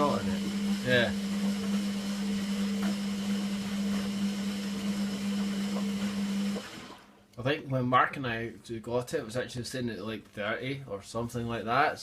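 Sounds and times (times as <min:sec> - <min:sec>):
washing machine humming: 0:00.0 - 0:07.2.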